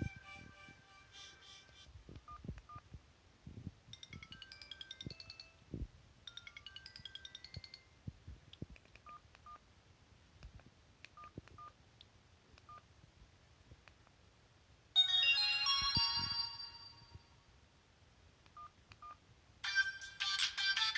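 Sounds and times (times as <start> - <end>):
full phone ringtone: 0.0 - 1.9, 4.0 - 5.6, 6.3 - 7.9, 15.0 - 17.3
electronic beeping ringtone: 0.0 - 2.4, 4.0 - 5.6, 15.0 - 17.2.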